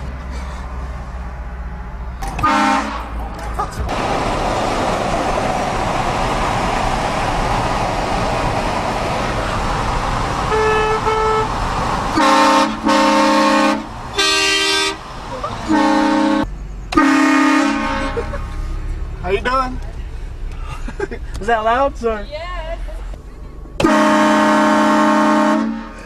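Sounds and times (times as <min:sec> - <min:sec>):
train horn blasting: 0:02.4 - 0:03.2, 0:10.5 - 0:11.5, 0:12.2 - 0:15.0, 0:15.7 - 0:18.2, 0:23.8 - 0:26.0
steady rushing noise: 0:03.2 - 0:12.9.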